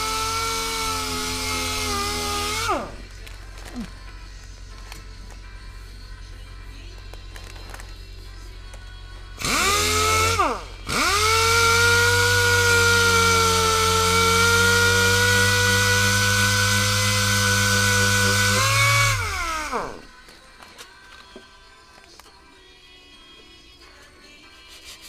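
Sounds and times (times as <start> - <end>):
handheld power tool running: 0.0 - 3.9, 9.4 - 20.1.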